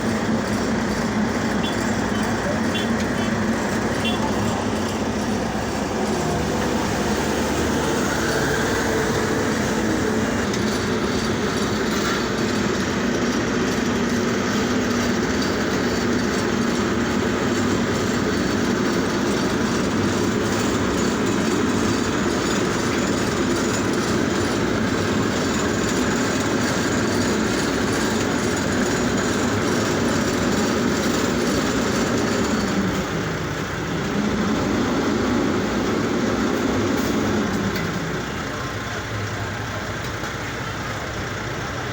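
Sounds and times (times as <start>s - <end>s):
road repair machinery running: 0.0s - 41.9s.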